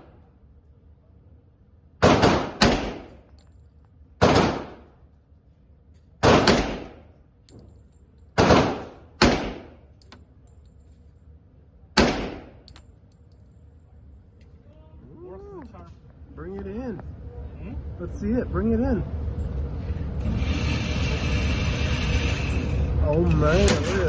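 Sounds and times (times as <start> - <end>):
pistol shots with echo: 2.0 - 3.2, 4.2 - 4.9, 6.2 - 7.0, 8.4 - 9.8, 12.0 - 12.6.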